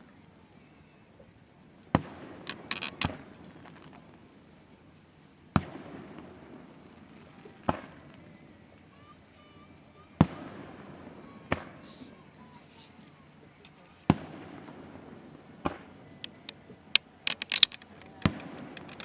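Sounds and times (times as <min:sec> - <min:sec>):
crackling firework pops: 0:01.2 - 0:04.3, 0:05.5 - 0:09.0, 0:10.2 - 0:12.0, 0:13.6 - 0:19.0
distant firework booms: 0:05.5 - 0:08.1, 0:10.2 - 0:12.0, 0:14.0 - 0:16.0.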